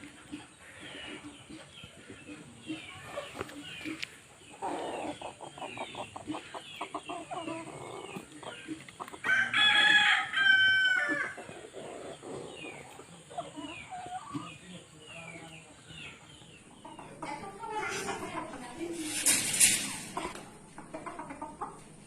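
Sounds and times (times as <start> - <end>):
chickens clucking and chirping: 0.0 - 22.0
rooster crowing: 9.2 - 11.4.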